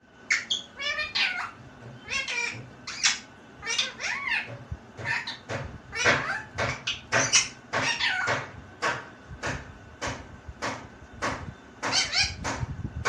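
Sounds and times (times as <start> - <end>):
parrot imitating speech: 0.3 - 8.3.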